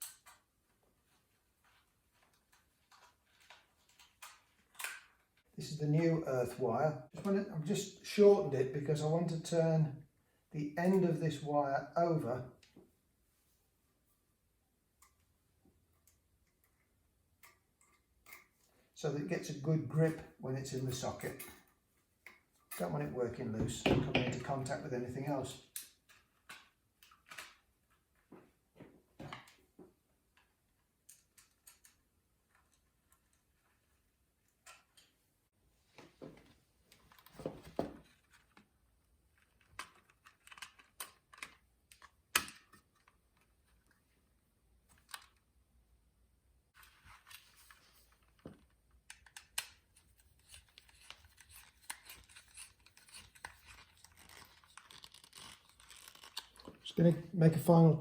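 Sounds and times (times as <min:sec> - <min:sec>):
hand tools clicking on wires: 0:48.5 - 0:57.0.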